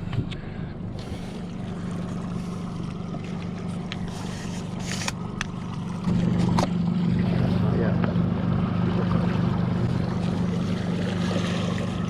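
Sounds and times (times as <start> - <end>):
boat motor humming: 0.0 - 12.0
wind: 0.0 - 12.0
water hiss: 1.0 - 5.4.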